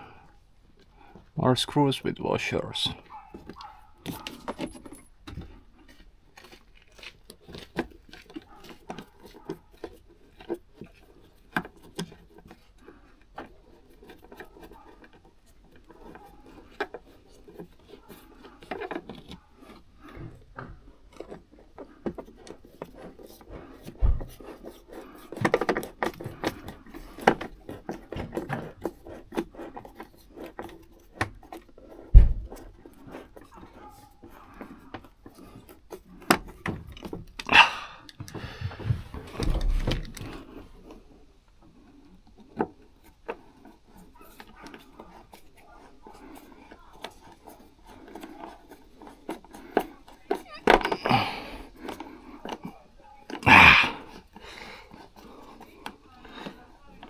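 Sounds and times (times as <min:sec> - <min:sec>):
dull thump: 0:24.0 - 0:24.4, 0:32.1 - 0:32.6, 0:38.4 - 0:40.3.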